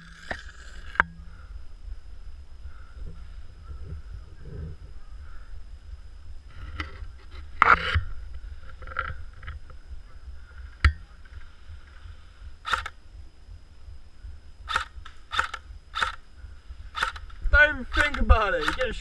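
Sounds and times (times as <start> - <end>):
wind on microphone: 0.0 - 19.0
airsoft guns firing: 14.7 - 16.2, 17.0 - 19.0.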